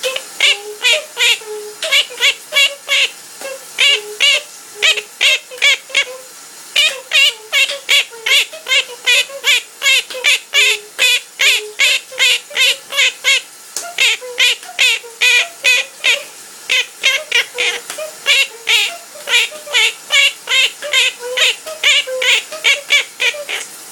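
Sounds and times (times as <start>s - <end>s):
parrot singing repeated notes: 0.0s - 6.2s, 6.8s - 23.6s.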